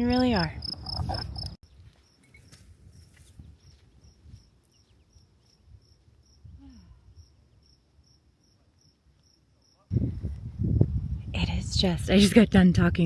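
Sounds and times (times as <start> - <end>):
cricket chirping: 0.1 - 9.9.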